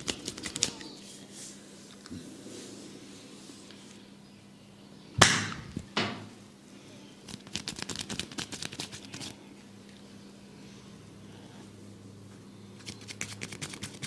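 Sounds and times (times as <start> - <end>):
hands slapping head: 5.2 - 5.6.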